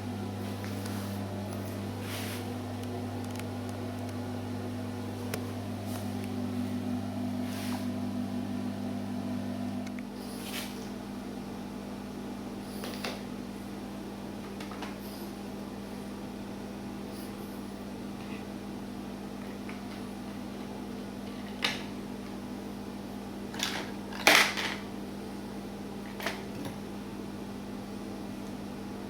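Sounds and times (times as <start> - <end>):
steady low hum: 0.0 - 21.2.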